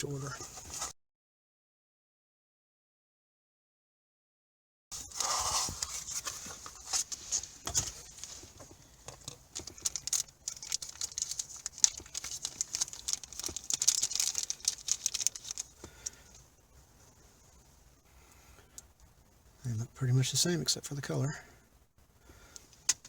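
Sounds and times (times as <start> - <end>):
plastic packaging crinkling: 5.0 - 17.6
small irregular clicks: 5.2 - 19.4, 22.3 - 23.0.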